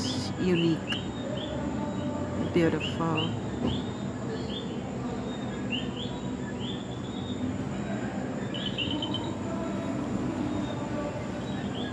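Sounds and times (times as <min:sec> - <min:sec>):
frogs chirping: 0:08.4 - 0:09.4.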